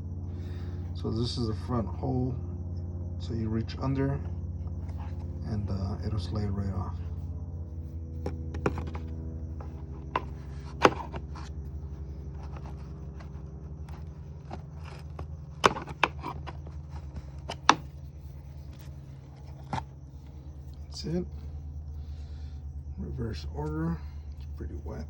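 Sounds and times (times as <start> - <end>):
steady low hum: 0.0 - 25.0
plastic parts clicking and knocking: 8.2 - 11.5, 12.4 - 17.9.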